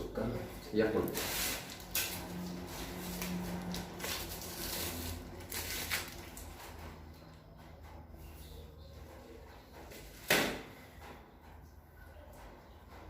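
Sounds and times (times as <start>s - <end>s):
rustling and scraping handling noise: 0.2s - 10.3s.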